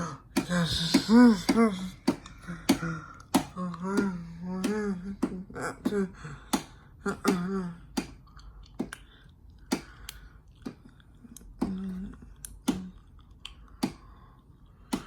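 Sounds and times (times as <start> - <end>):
person humming short sounds: 0.0 - 6.3.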